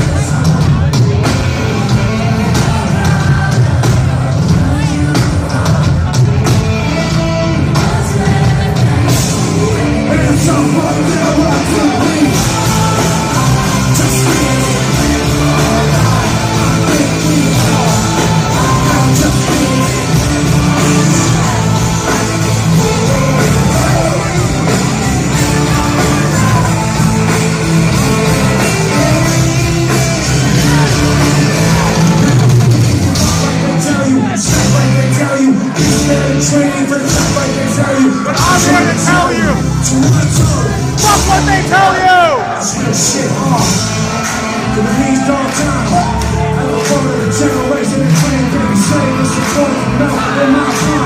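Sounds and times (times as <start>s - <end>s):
live rap rock band: 0.0s - 51.0s
person singing and shouting: 33.1s - 51.0s.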